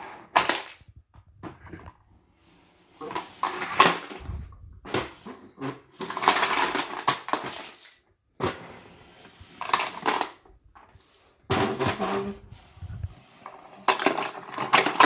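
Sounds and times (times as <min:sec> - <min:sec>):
plastic pieces clattering: 0:13.8 - 0:15.0.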